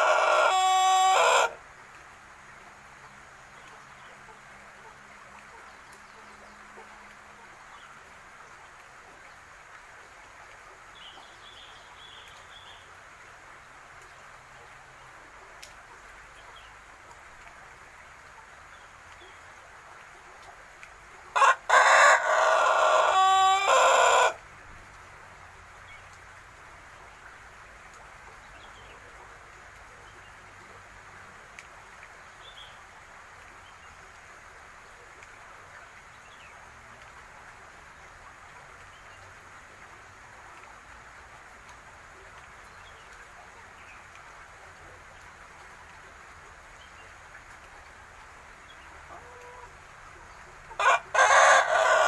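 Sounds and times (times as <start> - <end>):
young rooster crowing: 0.0 - 1.6, 21.4 - 24.4, 50.8 - 52.0
faint background hiss: 0.0 - 52.0.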